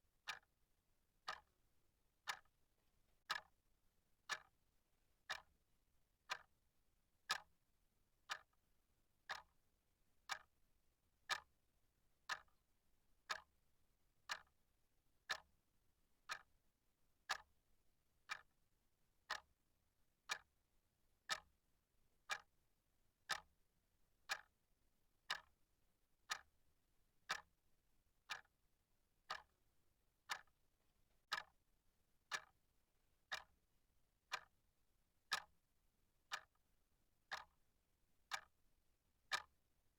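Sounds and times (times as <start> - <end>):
clock ticking: 1.2 - 1.5, 2.3 - 2.5, 3.3 - 3.5, 4.3 - 4.5, 5.3 - 5.5, 7.3 - 7.5, 9.3 - 9.5, 10.3 - 10.5, 11.3 - 11.5, 12.3 - 12.5, 13.3 - 13.5, 14.3 - 14.5, 16.3 - 16.5, 17.3 - 17.5, 19.3 - 19.5, 21.3 - 21.5, 22.3 - 22.5, 23.3 - 23.5, 24.3 - 24.5, 25.3 - 25.5, 27.3 - 27.5, 28.3 - 28.5, 29.3 - 29.6, 30.3 - 30.5, 31.3 - 31.6, 32.3 - 32.6, 33.3 - 33.5, 34.3 - 34.5, 35.3 - 35.5, 36.3 - 36.6, 37.3 - 37.6, 38.3 - 38.5, 39.3 - 39.6.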